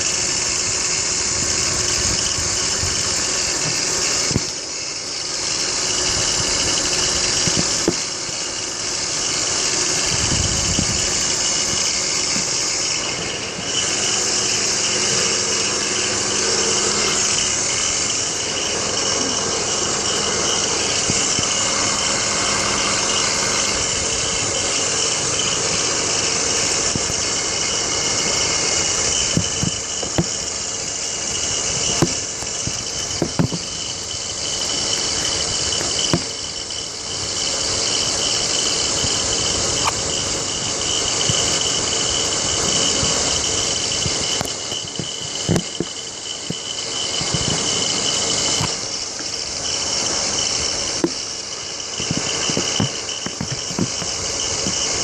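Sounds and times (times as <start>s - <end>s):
engine running with hiss and whine: 0.0s - 55.0s
sharp knocks: 7.4s - 8.1s, 31.8s - 33.8s.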